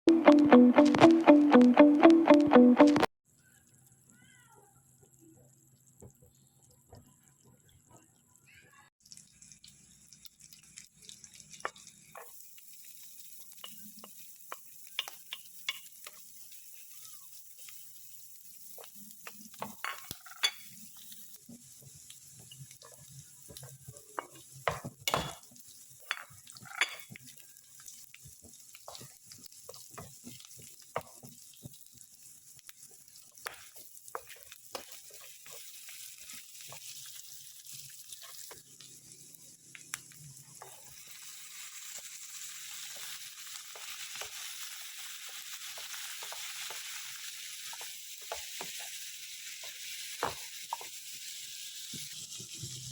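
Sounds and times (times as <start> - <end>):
food frying in a pan: 3.3 - 52.9
spatula scraping and tapping pan: 13.2 - 16.3, 18.7 - 32.1, 32.8 - 38.8, 47.7 - 49.0, 49.6 - 51.0.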